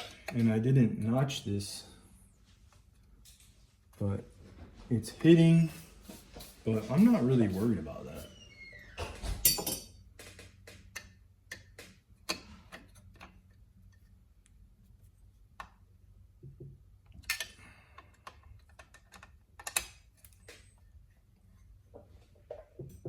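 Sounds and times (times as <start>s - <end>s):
small steel bolts clicking: 17.1s - 20.6s.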